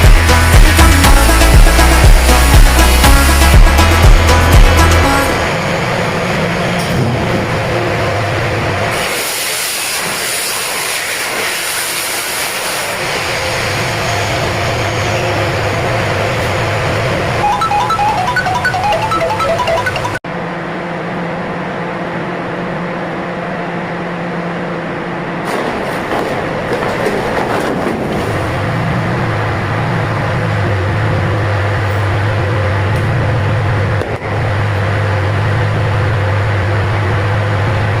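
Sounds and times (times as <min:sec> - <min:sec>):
music: 0:00.0 - 0:05.6, 0:17.4 - 0:20.2.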